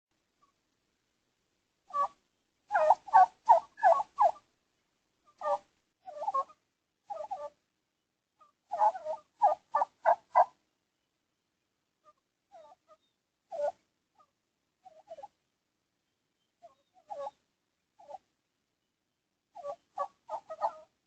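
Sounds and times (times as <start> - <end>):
wild turkeys calling: 1.9 - 4.5, 5.3 - 7.6, 8.4 - 10.6, 12.1 - 15.4, 19.6 - 20.9.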